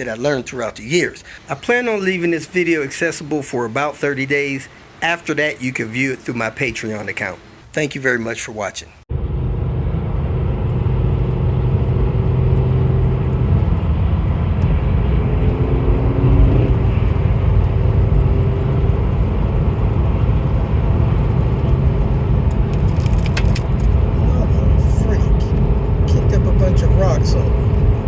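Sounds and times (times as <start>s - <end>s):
car engine and road rumble: 9.0s - 28.0s.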